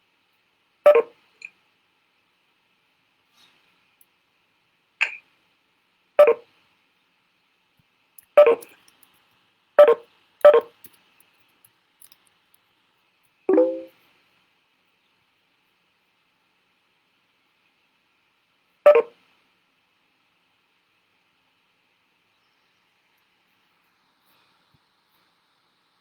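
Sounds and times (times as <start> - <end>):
short electronic beeps: 0.9 - 1.1, 6.2 - 6.4, 8.4 - 8.7, 9.8 - 10.7, 13.5 - 13.9, 18.9 - 19.1
steady tones held together: 13.5 - 13.9.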